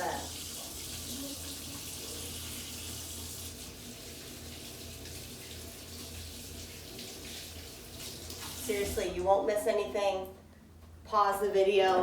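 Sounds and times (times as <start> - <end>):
tap water running into sink: 0.0 - 9.0.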